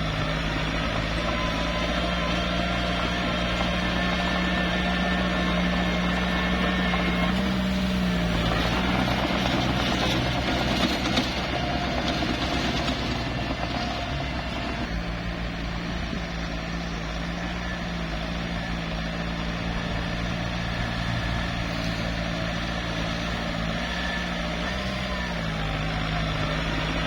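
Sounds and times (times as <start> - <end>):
bulldozer diesel engine running: 0.0 - 27.0.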